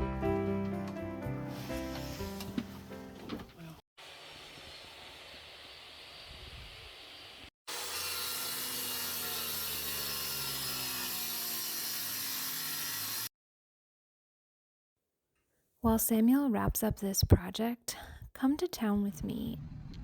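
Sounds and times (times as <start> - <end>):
power tool working on lumber: 7.7 - 13.3.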